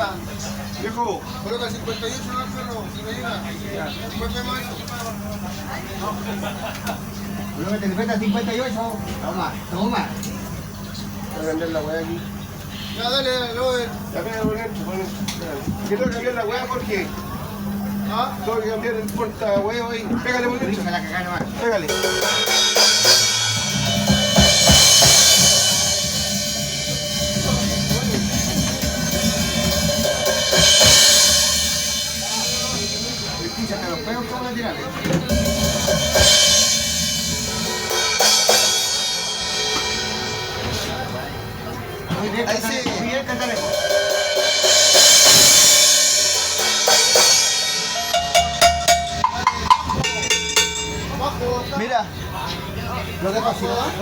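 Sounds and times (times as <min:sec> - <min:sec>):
drum hits: 0:21.4 - 0:33.9, 0:35.0 - 0:41.2, 0:42.8 - 0:51.4
cymbal crashes: 0:21.9 - 0:34.0, 0:35.3 - 0:41.6, 0:43.5 - 0:51.6
held tone: 0:47.6 - 0:51.7.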